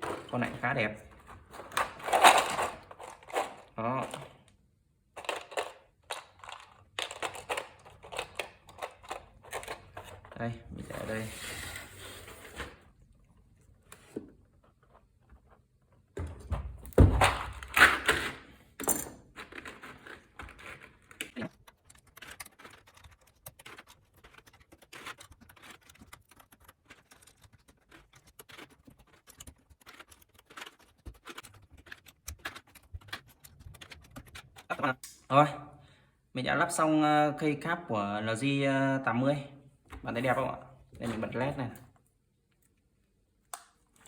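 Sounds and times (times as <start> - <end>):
plastic keycaps clattering: 1.5 - 4.3, 5.2 - 10.4, 18.8 - 35.1.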